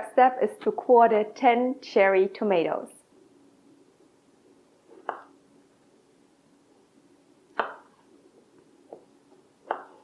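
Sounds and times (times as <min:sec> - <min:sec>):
knife chopping on cutting board: 0:09.6 - 0:10.0.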